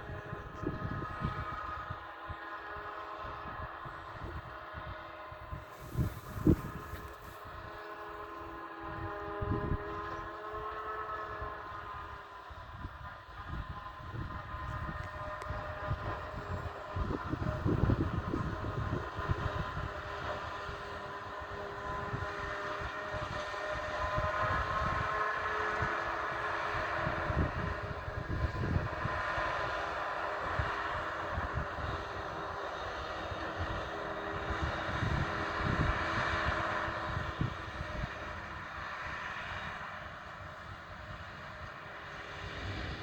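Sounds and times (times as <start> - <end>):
distant harvesting machinery hum: 0.0 - 43.0
wind buffeting microphone: 3.4 - 8.0, 12.8 - 21.0, 21.8 - 32.2.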